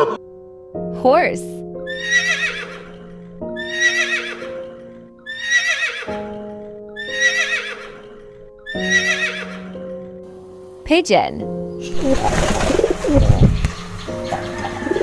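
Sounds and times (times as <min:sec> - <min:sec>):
slow held chords music: 0:00.0 - 0:05.3, 0:09.4 - 0:15.0
horse whinnying: 0:01.9 - 0:09.7.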